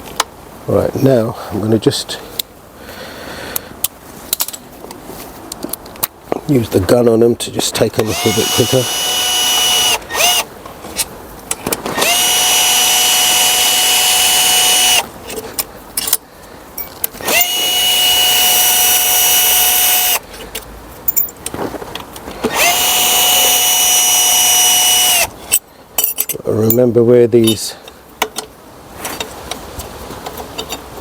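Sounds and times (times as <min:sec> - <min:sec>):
bolts and tool clicks: 0:16.8 - 0:27.6.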